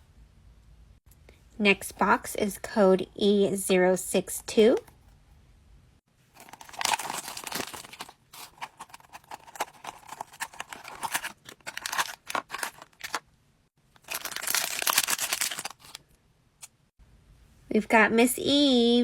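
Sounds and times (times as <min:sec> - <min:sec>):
cardboard packaging tearing: 0:06.4 - 0:13.2, 0:14.0 - 0:16.0.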